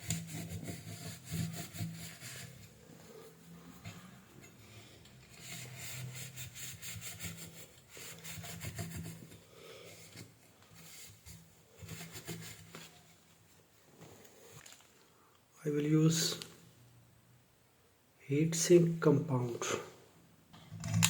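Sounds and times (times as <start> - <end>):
hand scrubbing hard surface: 0.0 - 13.5.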